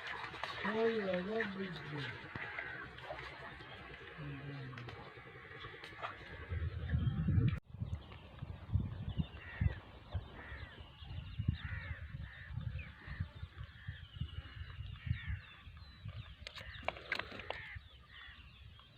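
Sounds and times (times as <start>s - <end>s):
small birds chirping: 0.6s - 18.9s
crows cawing: 1.8s - 4.2s, 4.8s - 6.7s, 10.4s - 10.8s, 11.6s - 14.0s, 16.6s - 18.4s.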